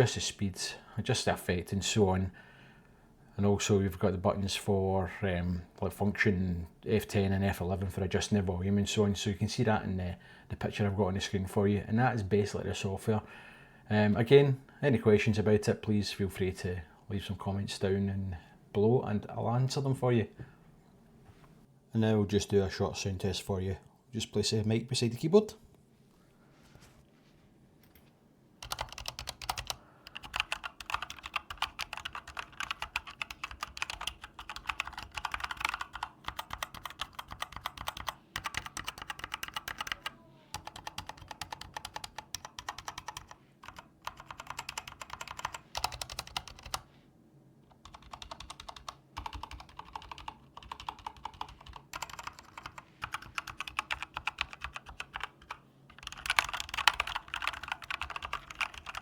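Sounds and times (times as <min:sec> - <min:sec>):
mechanical keyboard typing: 0:28.6 - 0:46.8, 0:47.7 - 0:59.0.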